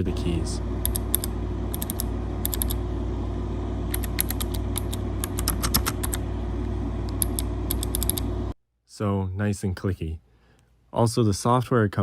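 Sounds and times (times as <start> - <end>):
steady low hum: 0.0 - 12.0
clicky keyboard typing: 0.8 - 2.8, 3.9 - 6.2, 7.1 - 8.3.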